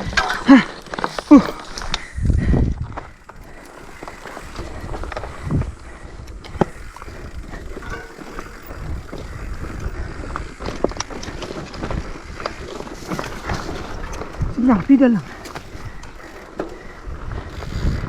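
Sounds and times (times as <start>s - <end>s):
bike rattling: 0.0s - 18.0s
tyres crunching on dirt: 0.0s - 18.0s.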